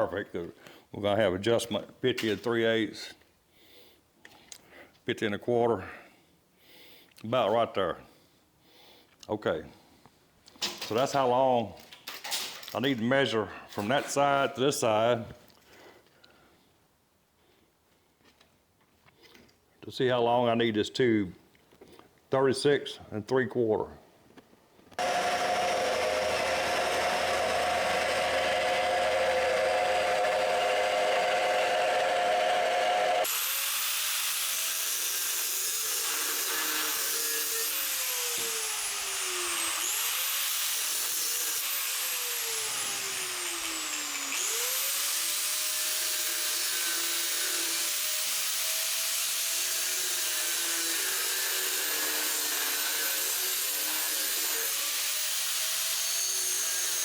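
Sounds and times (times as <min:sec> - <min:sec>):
electric power tool running: 0:25.0 - 0:57.0.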